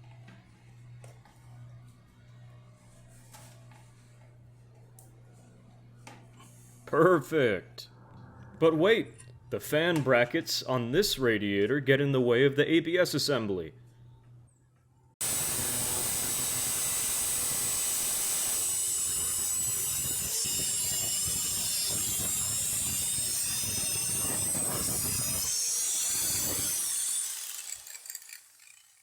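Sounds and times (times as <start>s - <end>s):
power grinder cutting metal: 15.2s - 29.0s.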